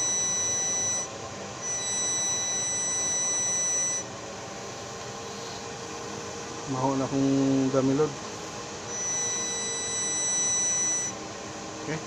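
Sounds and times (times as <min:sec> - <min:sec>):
high-pitched sine test tone: 0:00.0 - 0:05.8, 0:08.8 - 0:11.3.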